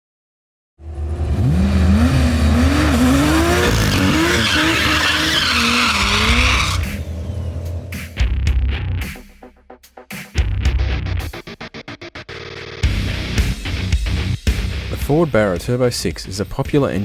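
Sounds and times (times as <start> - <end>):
car engine revving: 0.8 - 9.4
tyres spinning and squealing: 1.4 - 8.0.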